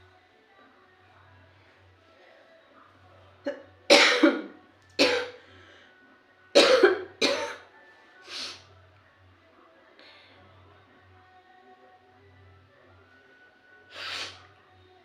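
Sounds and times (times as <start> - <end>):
woman coughing: 3.5 - 5.4, 6.6 - 7.6.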